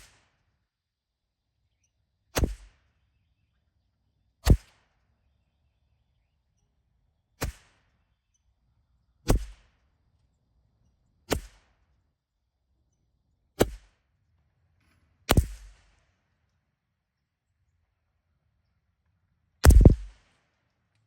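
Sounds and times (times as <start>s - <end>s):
rifle shots: 19.6s - 20.2s.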